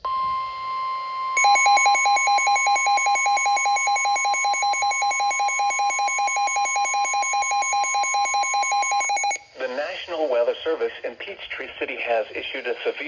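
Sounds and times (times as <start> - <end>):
steady high alert tone: 0.1 - 9.4
rapid electronic beeping: 1.4 - 9.4.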